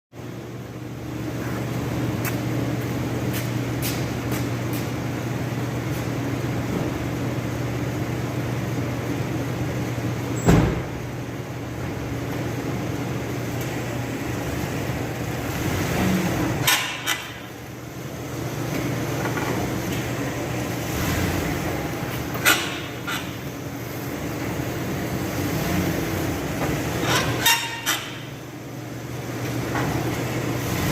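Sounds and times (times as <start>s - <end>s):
truck engine humming: 0.2s - 30.8s.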